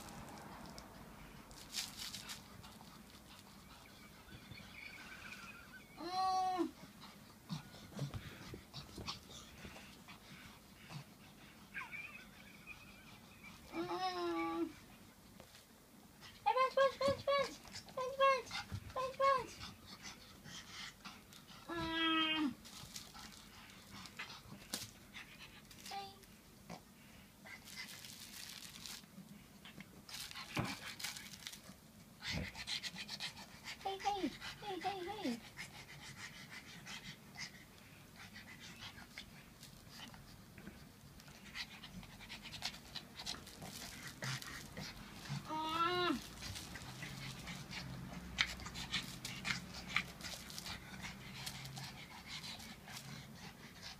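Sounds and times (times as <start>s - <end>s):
dog chewing crinkly toy: 1.5s - 3.7s, 22.6s - 24.9s, 27.5s - 29.2s, 30.1s - 31.8s, 42.7s - 45.4s, 46.1s - 47.6s, 48.4s - 51.8s
dog breathing hard: 32.2s - 40.3s.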